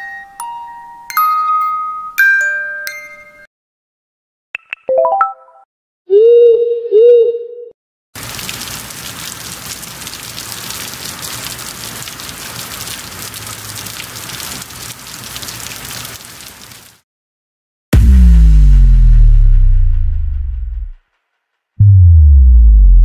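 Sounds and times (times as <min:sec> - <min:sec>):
rain patter: 0:08.2 - 0:17.0.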